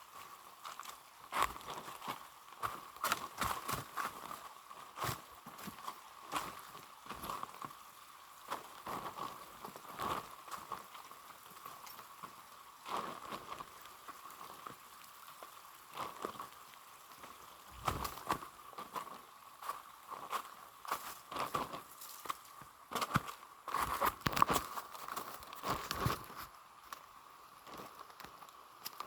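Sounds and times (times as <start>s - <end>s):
footsteps on dirt trail: 17.7s - 27.1s.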